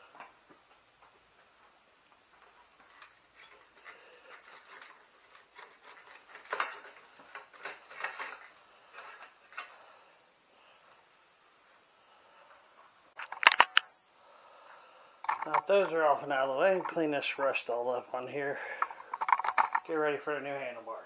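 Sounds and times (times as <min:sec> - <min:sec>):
metallic clinks and rattles of tools: 0:02.4 - 0:09.7, 0:13.2 - 0:13.8, 0:15.3 - 0:15.8, 0:18.8 - 0:19.9.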